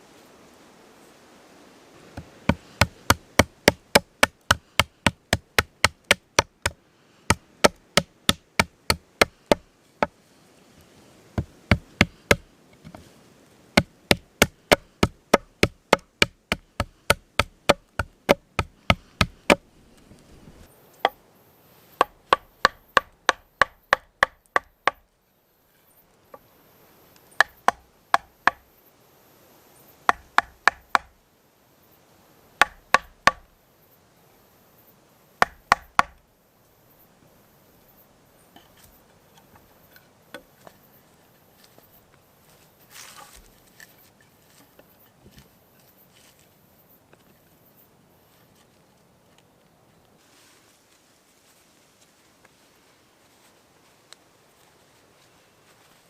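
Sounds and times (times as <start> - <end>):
tool knocking on wood: 32.6 - 33.4, 35.4 - 36.2.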